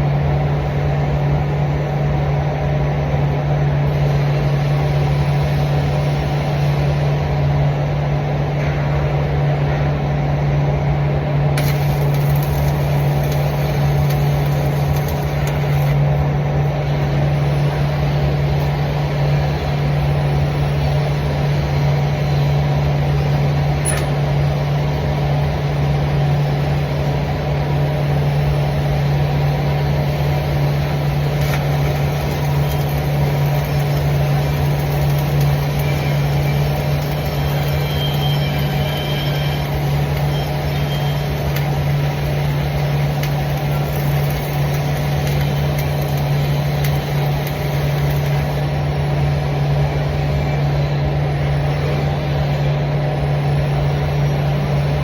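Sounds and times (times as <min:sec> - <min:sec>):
machine humming: 0:11.0 - 0:55.0.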